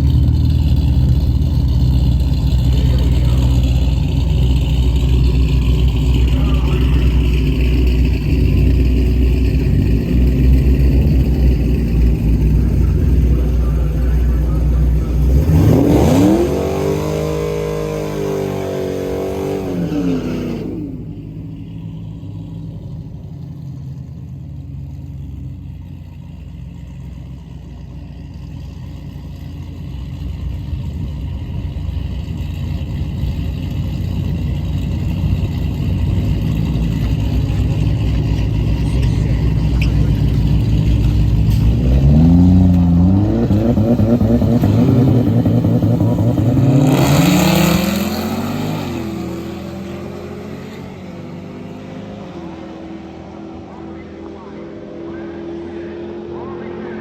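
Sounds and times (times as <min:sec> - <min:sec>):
race car engines running: 0:00.0 - 0:57.0
engine revving hard: 0:02.2 - 0:21.1, 0:38.9 - 0:57.0.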